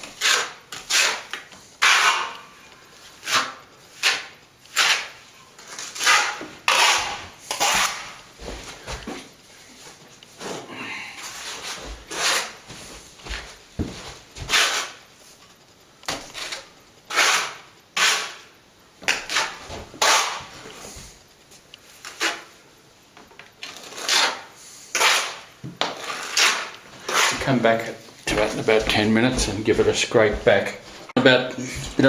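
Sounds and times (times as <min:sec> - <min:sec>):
plastering tool scraping: 0:00.0 - 0:08.6, 0:10.4 - 0:13.4, 0:14.4 - 0:15.1, 0:16.1 - 0:18.5, 0:19.1 - 0:21.2, 0:22.0 - 0:22.6, 0:23.6 - 0:29.9.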